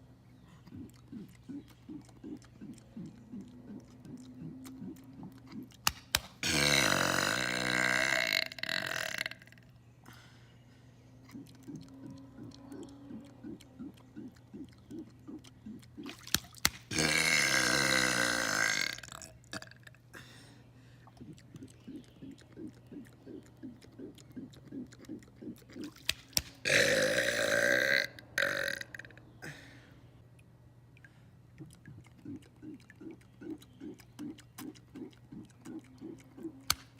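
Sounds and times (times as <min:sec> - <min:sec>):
man burping: 0:06.4 - 0:09.6, 0:16.9 - 0:19.8, 0:26.6 - 0:29.6.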